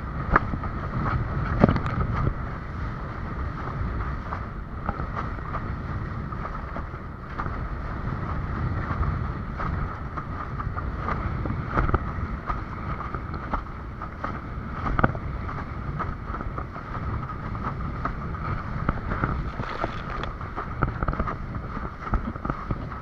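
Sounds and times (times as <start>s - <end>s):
wind buffeting microphone: 0.0s - 23.0s
water splashing against board: 18.7s - 20.6s.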